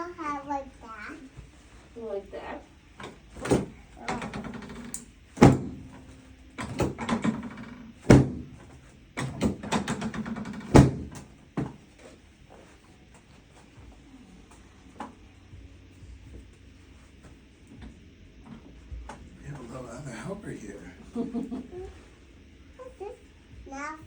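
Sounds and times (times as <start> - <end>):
heavy thuds on treatment table: 5.4 - 6.0, 8.0 - 9.7, 10.7 - 11.8.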